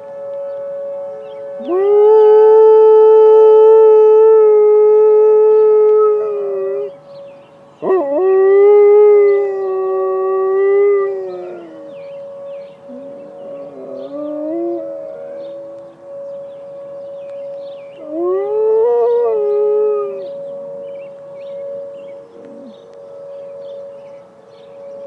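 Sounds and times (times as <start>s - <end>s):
emergency siren steady tone: 0.0s - 25.0s
dog howling: 1.6s - 7.0s, 7.8s - 12.1s, 12.8s - 16.0s, 18.0s - 20.4s, 21.9s - 23.0s.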